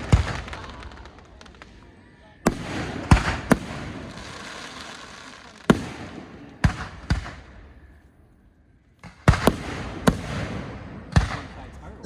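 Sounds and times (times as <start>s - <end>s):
fireworks bangs: 0.0s - 7.9s, 9.0s - 12.0s
hissing crackling firework tail: 0.0s - 8.1s.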